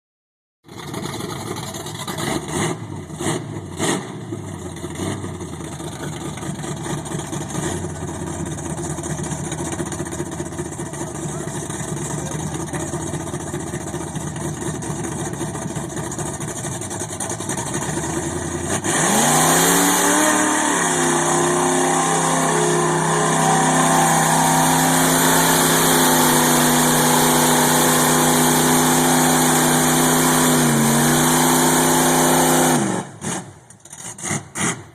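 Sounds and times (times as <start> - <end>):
engine running with throttle blips: 0.6 - 34.9
pitched engine drone: 4.8 - 33.4.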